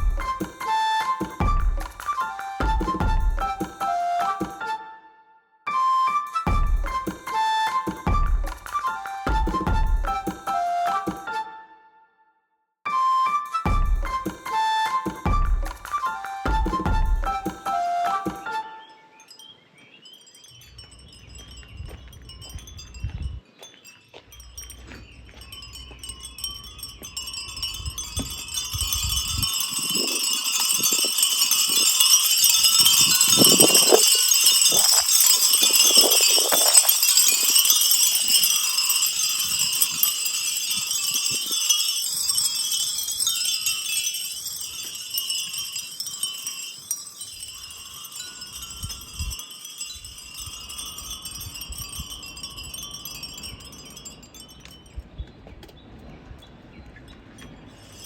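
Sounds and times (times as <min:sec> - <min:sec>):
wind bell tinkling: 0:00.0 - 0:00.6, 0:18.9 - 0:55.7, 0:56.3 - 0:58.0.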